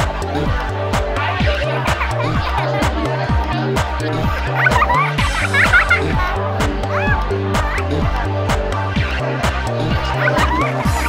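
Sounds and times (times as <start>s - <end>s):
dance music: 0.0s - 11.0s
kick drum: 0.0s - 11.0s
pulsing bass line: 0.0s - 11.0s.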